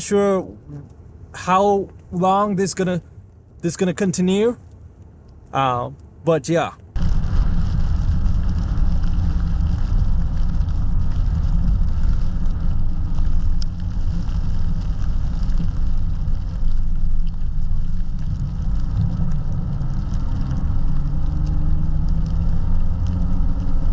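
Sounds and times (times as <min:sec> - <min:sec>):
car engine: 0:00.0 - 0:23.9
tyres rumbling on snow: 0:05.6 - 0:23.9.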